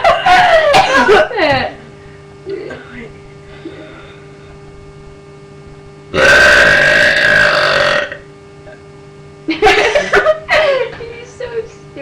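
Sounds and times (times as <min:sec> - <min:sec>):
person burping loudly: 0:06.1 - 0:08.8.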